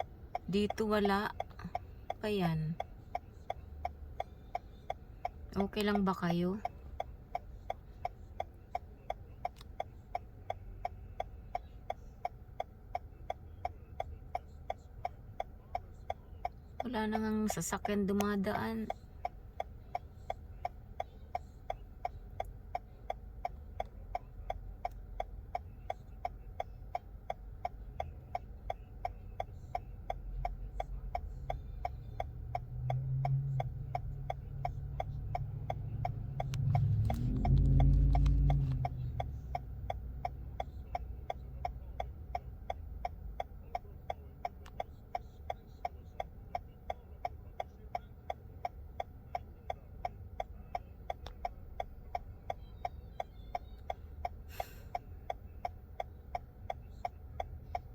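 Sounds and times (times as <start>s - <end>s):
low hum: 0.0s - 45.7s
car turn signal clicking: 0.0s - 57.9s
low rumble: 30.4s - 41.5s.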